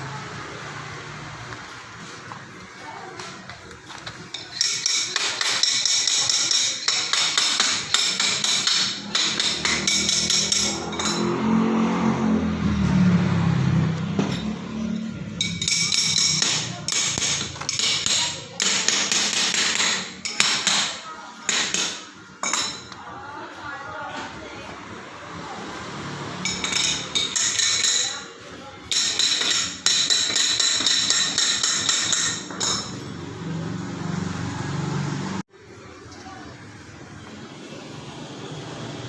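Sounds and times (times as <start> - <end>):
hammer striking metal: 4.4 - 11.8, 14.0 - 23.0, 26.4 - 28.2, 28.9 - 33.2.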